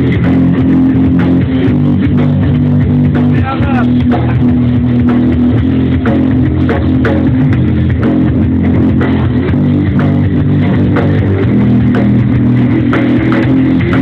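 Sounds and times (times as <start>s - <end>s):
bass guitar: 0.0s - 14.0s
drum kit: 0.0s - 14.0s
electric guitar: 0.0s - 14.0s.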